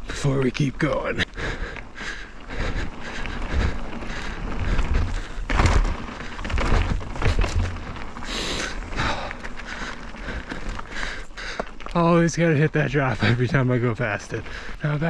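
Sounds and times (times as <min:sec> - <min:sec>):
bike tyres rolling over rock: 0:00.0 - 0:15.0
bike landing thud: 0:04.7 - 0:09.4.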